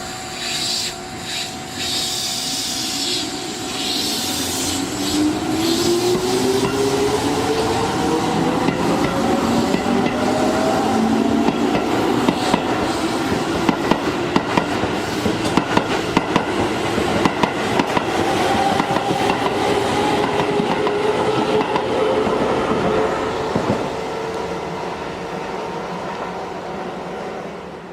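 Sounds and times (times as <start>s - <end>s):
train running noise: 0.0s - 27.9s
train wheels clicking over rail joints: 4.5s - 23.9s.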